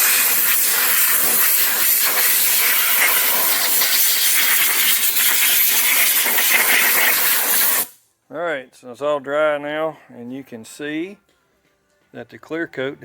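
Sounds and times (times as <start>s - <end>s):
compressed air hissing: 0.0s - 8.0s.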